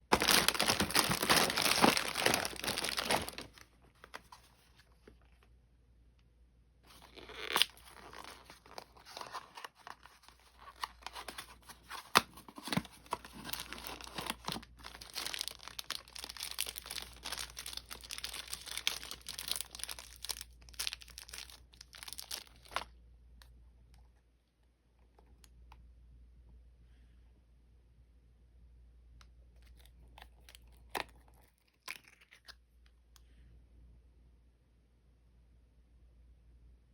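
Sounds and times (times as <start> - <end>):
packaging rustling and crinkling: 0.0 - 5.5, 6.9 - 22.9
packaging tearing: 0.1 - 4.4, 6.9 - 22.8.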